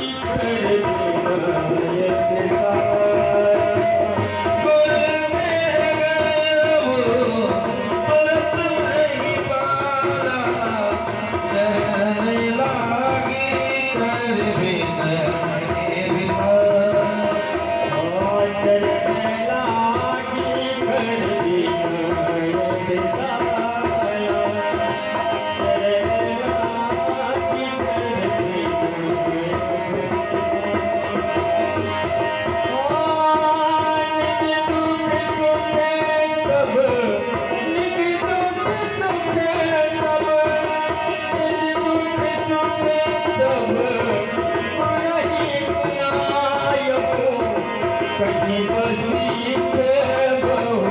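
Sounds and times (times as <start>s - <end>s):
devotional music: 0.0s - 50.9s
jingling percussion: 0.0s - 50.9s.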